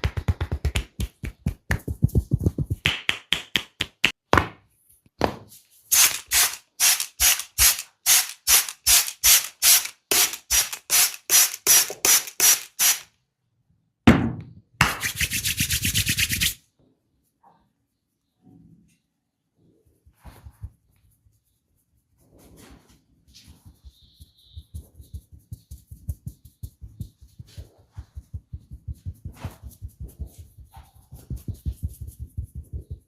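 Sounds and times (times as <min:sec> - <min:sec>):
massage slaps on body: 0:00.0 - 0:04.2
rubbing on skin: 0:15.0 - 0:16.6, 0:20.0 - 0:33.0.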